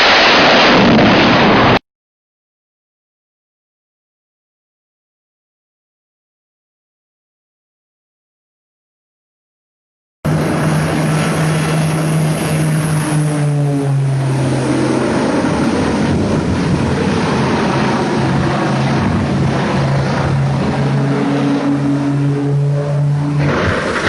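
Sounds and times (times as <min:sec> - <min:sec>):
propeller aircraft engine droning: 0:00.0 - 0:01.8, 0:10.3 - 0:24.0
rushing wind: 0:00.0 - 0:01.8, 0:10.3 - 0:24.0.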